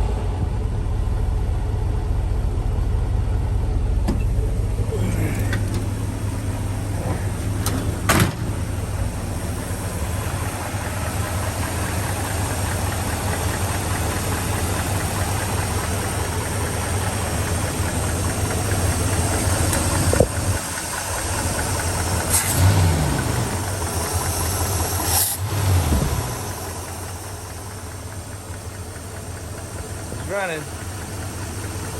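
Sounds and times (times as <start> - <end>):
engine idling: 0.0 - 31.9
light engine ticking: 26.6 - 31.9.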